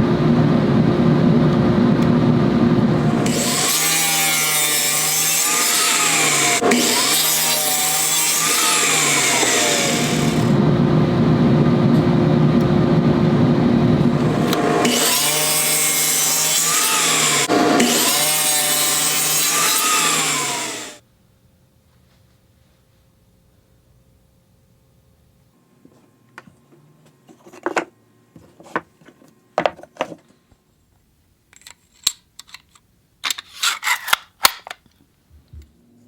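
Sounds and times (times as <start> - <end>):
power saw cutting wood: 3.0 - 10.6, 14.0 - 21.0.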